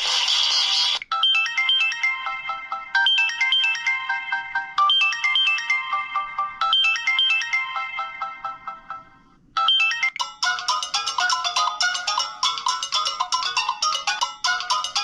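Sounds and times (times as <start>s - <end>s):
noisy ringtone: 0.3s - 15.0s
electronic ringtone melody: 1.0s - 15.0s.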